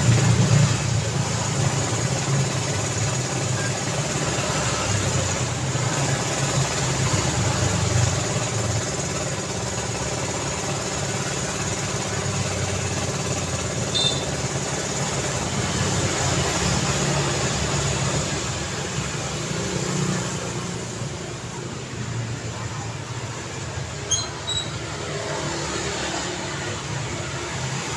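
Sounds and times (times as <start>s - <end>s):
vehicle engines running and idling: 0.0s - 27.9s
high squeak: 24.0s - 25.0s.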